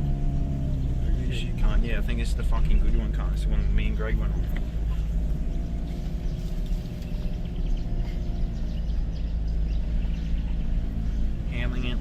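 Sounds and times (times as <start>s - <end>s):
engine and road rumble: 0.0s - 12.0s
body rattles and ticks: 3.7s - 10.4s.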